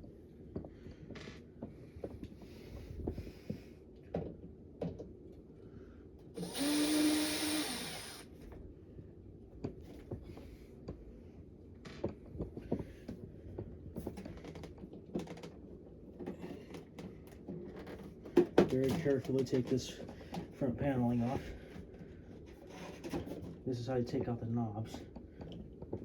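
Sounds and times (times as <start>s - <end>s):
whirring hiss with hum: 5.5s - 9.0s.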